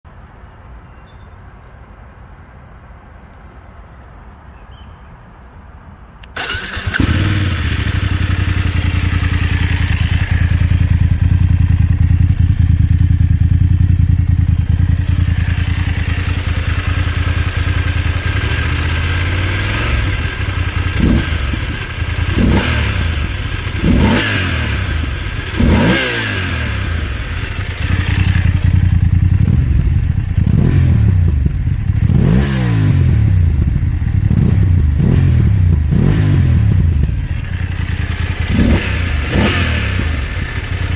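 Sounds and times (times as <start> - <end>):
motorcycle engine idling and revving: 6.3 - 40.9.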